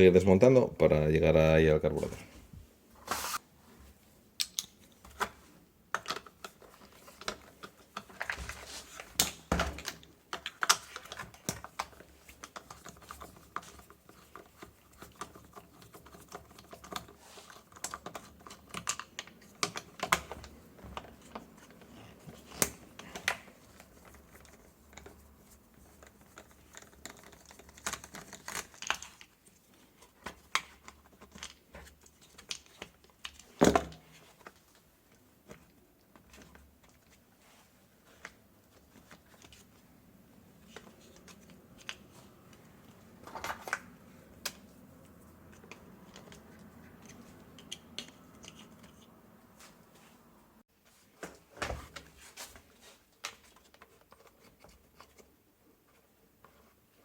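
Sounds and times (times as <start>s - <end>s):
hand tools clicking and tapping: 45.4s - 49.2s.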